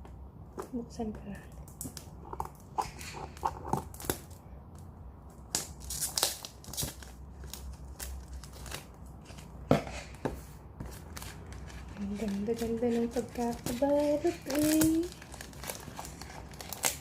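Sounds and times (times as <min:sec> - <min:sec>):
wrapping paper crinkling and tearing: 0:05.5 - 0:09.4, 0:11.0 - 0:17.0.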